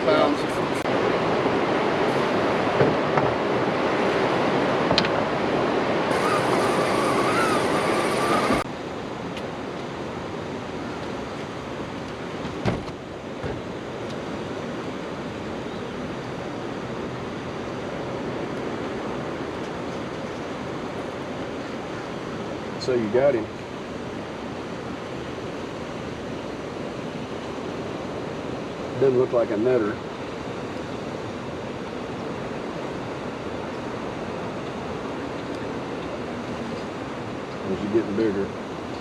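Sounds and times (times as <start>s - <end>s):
river water rushing: 3.4s - 8.7s.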